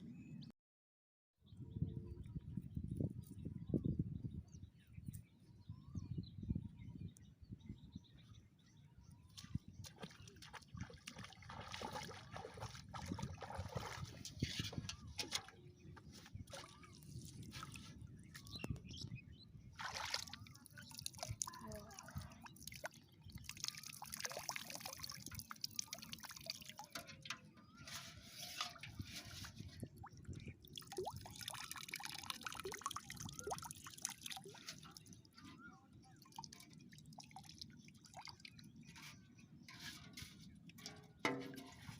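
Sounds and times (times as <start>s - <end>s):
water splashing and dripping: 9.3s - 18.8s, 19.8s - 35.5s, 36.2s - 41.9s.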